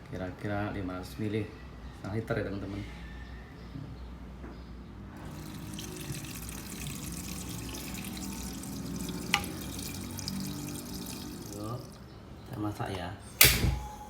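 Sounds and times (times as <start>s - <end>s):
water pouring into a pot: 5.2s - 12.0s
sharp metallic click: 13.4s - 13.9s.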